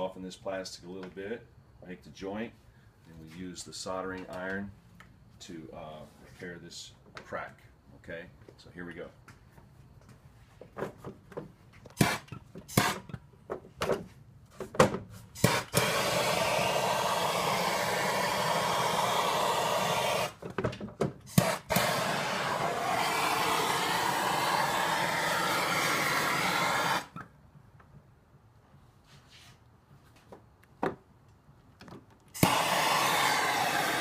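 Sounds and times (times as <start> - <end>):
heat tool rushing: 12.0 - 13.0, 15.4 - 20.4, 21.3 - 27.2, 32.4 - 34.0.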